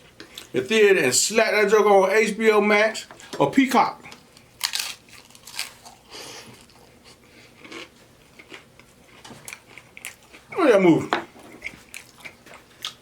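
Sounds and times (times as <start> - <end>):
chewing noises: 4.1 - 10.7, 11.4 - 13.0
crunchy food biting: 4.5 - 6.8.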